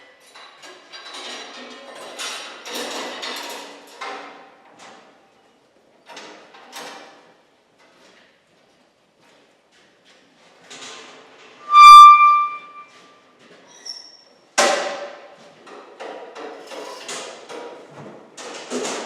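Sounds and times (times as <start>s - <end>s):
ringing metallic tone: 11.6s - 12.9s.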